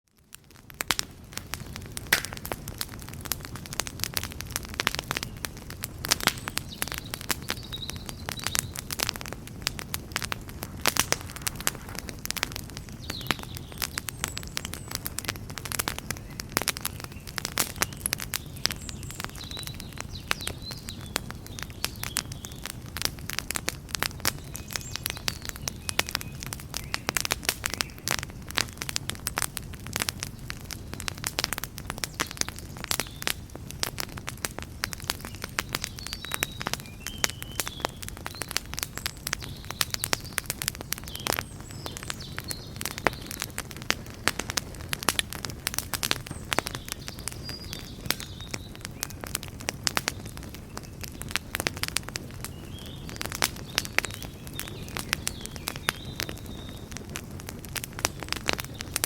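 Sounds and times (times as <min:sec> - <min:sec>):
fire crackling and popping: 0:00.1 - 0:59.0
low rumble of flames: 0:00.1 - 0:59.0.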